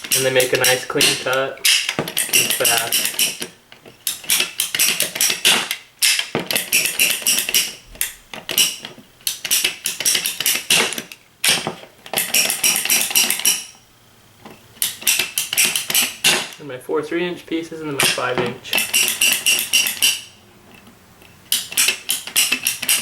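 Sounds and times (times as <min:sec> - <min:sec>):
pipe cutter clicking: 0:00.0 - 0:03.5.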